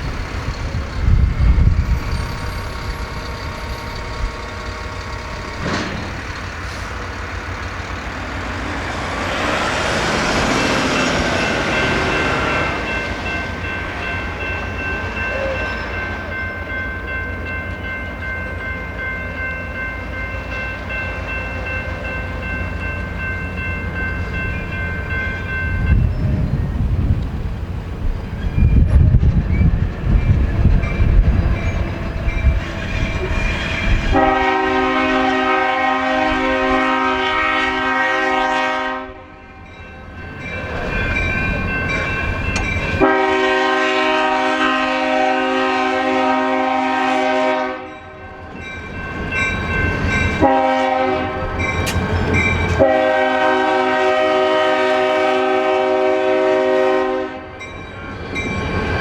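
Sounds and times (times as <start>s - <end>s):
low rumble of train: 0.0s - 59.0s
locomotive air horn blasts: 33.9s - 39.4s, 43.0s - 48.1s, 50.4s - 51.6s, 52.7s - 57.6s.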